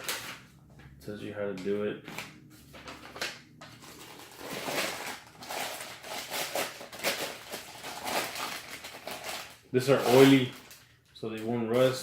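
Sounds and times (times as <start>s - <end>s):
packaging rustling: 0.0s - 0.5s, 2.0s - 11.1s.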